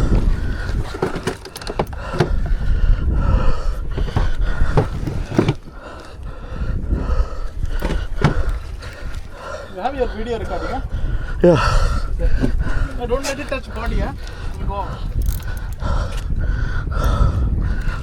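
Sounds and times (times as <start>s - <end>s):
wind buffeting microphone: 0.0s - 18.0s
irregular knocks and thumps: 0.1s - 2.6s, 3.9s - 6.0s, 7.7s - 8.6s.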